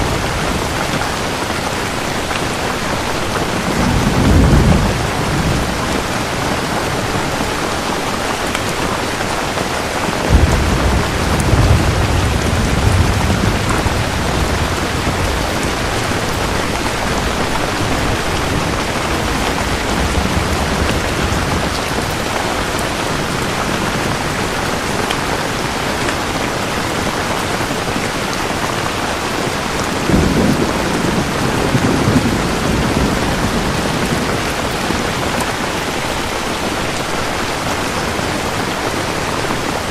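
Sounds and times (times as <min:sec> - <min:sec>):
heavy rainfall: 0:00.0 - 0:39.9
thunder rumbling: 0:03.1 - 0:08.2, 0:10.0 - 0:26.3, 0:29.3 - 0:36.0.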